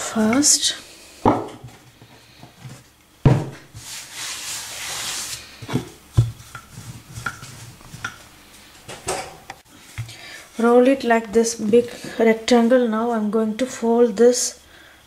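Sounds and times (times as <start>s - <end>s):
rolling pin rolling dough: 3.7s - 8.3s.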